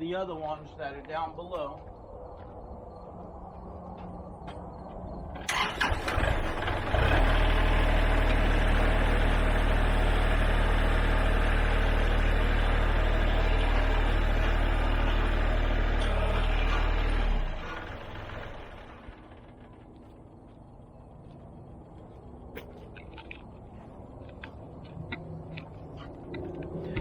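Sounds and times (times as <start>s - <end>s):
diesel tractor engine starting: 5.3s - 20.8s.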